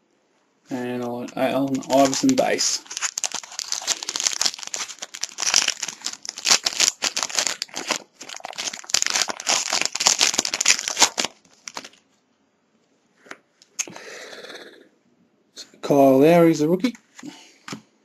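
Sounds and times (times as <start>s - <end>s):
wrapper crinkling and tearing: 1.4s - 12.0s.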